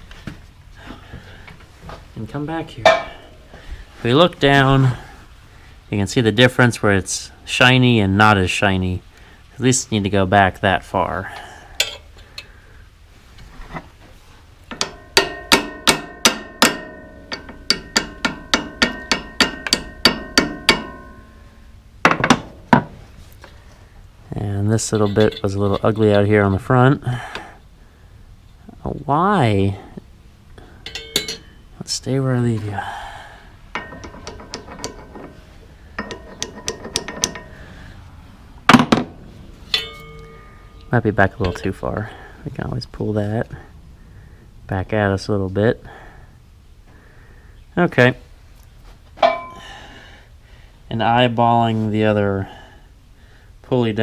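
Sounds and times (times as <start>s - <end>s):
sharp metal knock: 2.8s - 3.4s, 14.7s - 22.9s, 30.9s - 31.6s, 38.7s - 41.6s, 49.2s - 49.6s
hammer tapping metal: 2.8s - 3.5s, 14.7s - 22.9s, 30.8s - 31.6s, 33.7s - 35.4s, 36.0s - 37.6s, 38.7s - 41.7s, 49.2s - 49.6s
loud metal clank: 2.8s - 3.5s, 14.7s - 23.0s, 33.7s - 37.9s, 38.7s - 41.7s, 49.2s - 49.8s
light metallic ratchet clicks: 33.7s - 37.7s.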